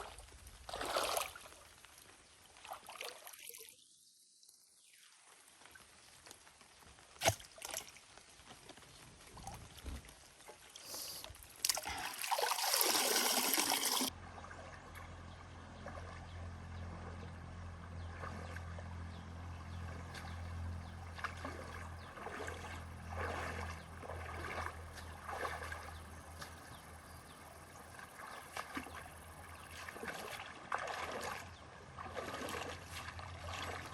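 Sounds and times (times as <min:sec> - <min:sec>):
water splashing and trickling: 0:00.0 - 0:33.9
steady low hum: 0:14.2 - 0:33.9.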